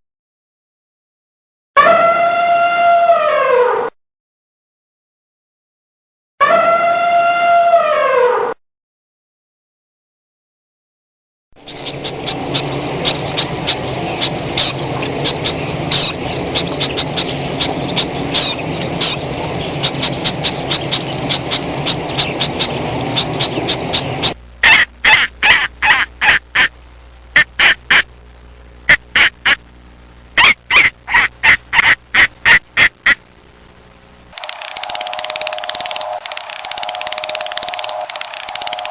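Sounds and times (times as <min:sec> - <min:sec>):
flock of birds calling: 0:11.6 - 0:24.4
bird giving rapid short calls: 0:11.7 - 0:26.7.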